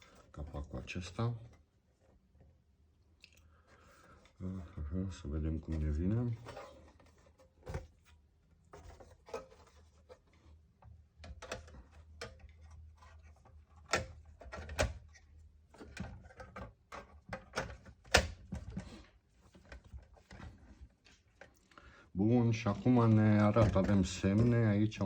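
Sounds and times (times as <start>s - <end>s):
plastic cover clicks and knocks: 15.8s - 19.0s, 22.8s - 24.8s.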